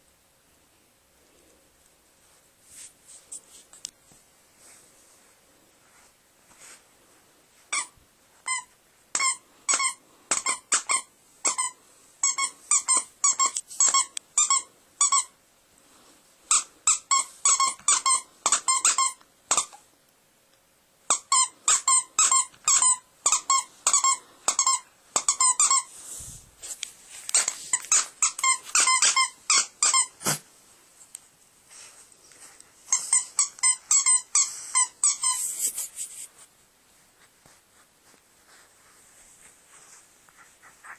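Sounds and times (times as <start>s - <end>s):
squeaky dog toy squeaking: 7.7s - 15.4s, 16.5s - 19.8s, 21.1s - 25.9s, 27.4s - 30.4s, 32.8s - 35.6s.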